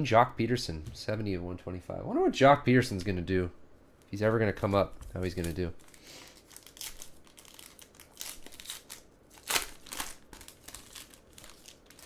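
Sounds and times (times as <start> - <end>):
cards crinkling and rustling: 4.5 - 12.0.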